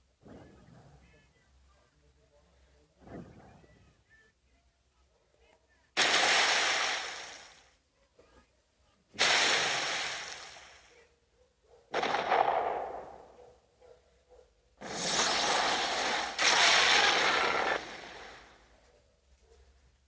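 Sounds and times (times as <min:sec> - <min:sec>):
monster hissing breath blasts: 0:14.8 - 0:18.5.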